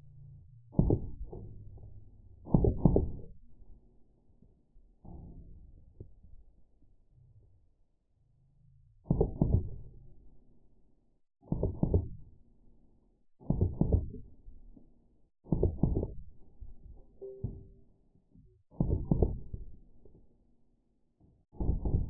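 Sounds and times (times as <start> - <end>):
slowed gunshots as deep thuds: 0.8 - 1.4, 2.5 - 3.3.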